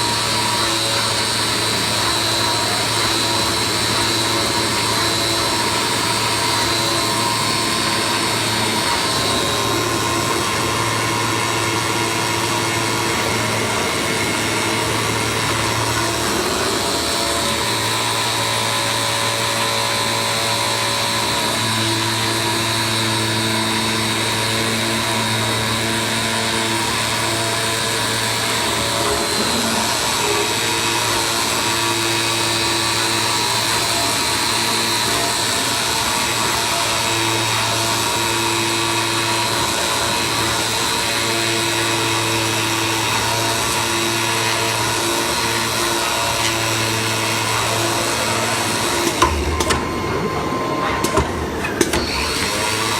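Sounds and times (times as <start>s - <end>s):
cutting machine whirring: 0.0s - 52.9s.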